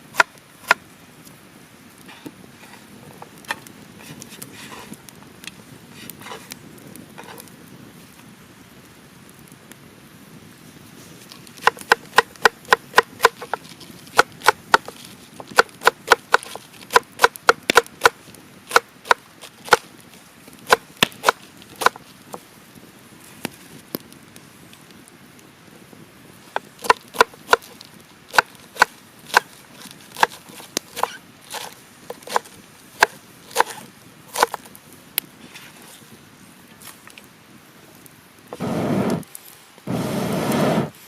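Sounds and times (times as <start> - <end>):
blade chopping on wood: 11.6 - 13.6, 15.5 - 19.8, 30.1 - 33.8.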